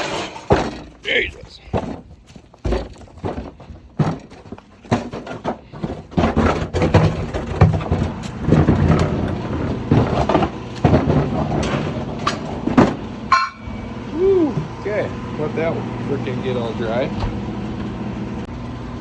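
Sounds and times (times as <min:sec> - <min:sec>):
knocks and clatter: 0:00.0 - 0:13.6.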